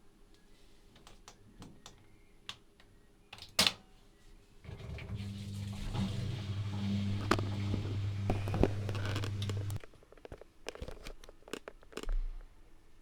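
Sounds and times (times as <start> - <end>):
washing machine low hum: 4.6 - 9.8.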